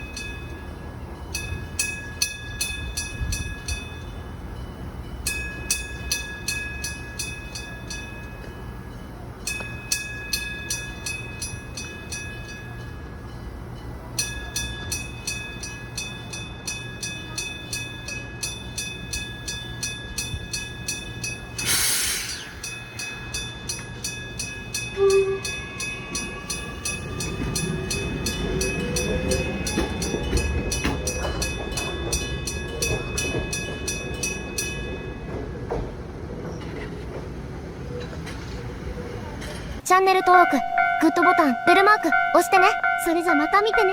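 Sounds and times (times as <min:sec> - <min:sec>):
level crossing bell ringing: 0:00.0 - 0:35.3, 0:39.9 - 0:43.9
train rumbling over tracks: 0:00.0 - 0:43.9
short burst of hiss: 0:21.6 - 0:22.6
train horn toot: 0:25.0 - 0:25.6.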